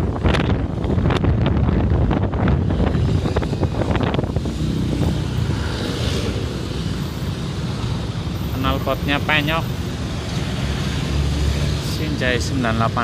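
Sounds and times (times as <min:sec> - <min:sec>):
wind buffeting microphone: 0:00.0 - 0:08.3
low rumble of road traffic: 0:00.0 - 0:13.0.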